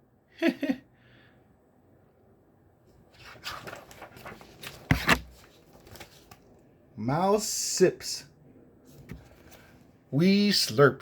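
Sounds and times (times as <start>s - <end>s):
rustling: 2.9s - 6.6s.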